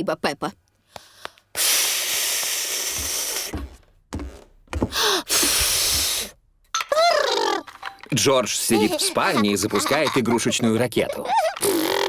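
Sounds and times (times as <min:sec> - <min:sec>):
soft low thumps: 0:02.9 - 0:06.3.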